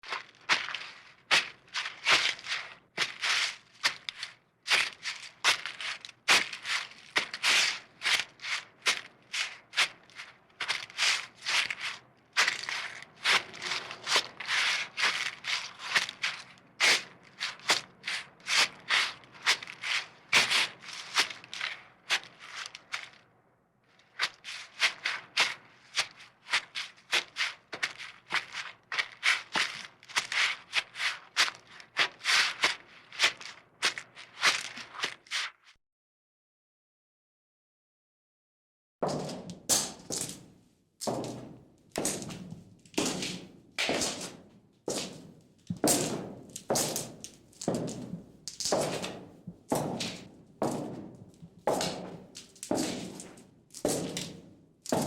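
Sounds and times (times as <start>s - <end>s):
footsteps on forest floor: 0.0s - 14.4s, 27.2s - 35.4s, 39.0s - 55.0s.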